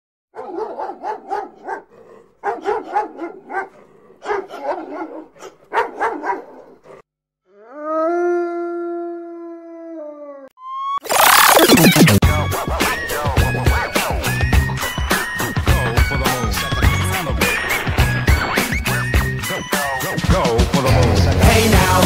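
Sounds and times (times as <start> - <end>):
dog yipping and barking: 0.4 - 6.8
dog howling: 0.4 - 7.0, 7.6 - 10.5.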